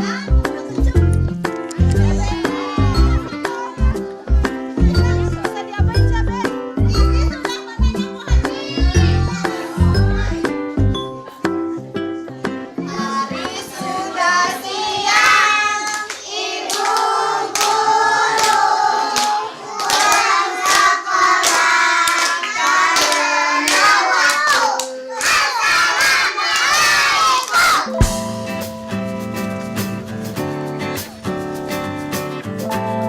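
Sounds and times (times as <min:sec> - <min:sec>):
children singing: 0:12.8 - 0:28.0
children clapping: 0:15.2 - 0:27.9.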